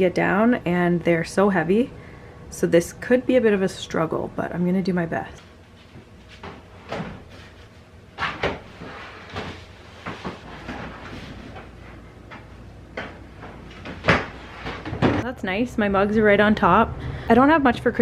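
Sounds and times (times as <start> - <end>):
scraping and rustling: 5.7 - 12.0.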